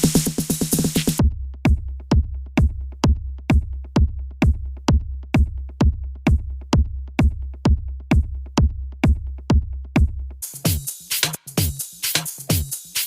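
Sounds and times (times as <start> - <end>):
deep bass line: 0.0 - 10.4
drum machine kick beat: 0.0 - 13.0.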